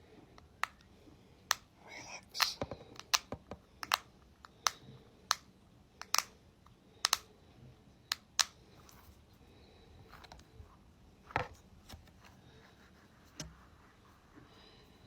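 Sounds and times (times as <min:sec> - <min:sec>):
sharp tapping clicks on a ball: 0:00.3 - 0:00.9, 0:01.5 - 0:01.7, 0:02.4 - 0:06.4, 0:07.0 - 0:07.3, 0:08.1 - 0:08.6.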